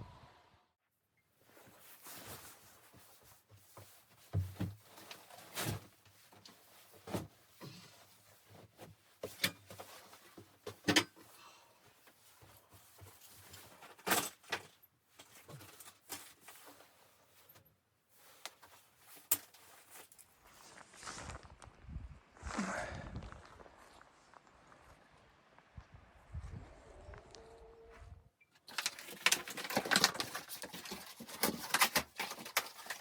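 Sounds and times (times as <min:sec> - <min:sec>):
objects knocking and clattering: 0:28.7 - 0:33.0.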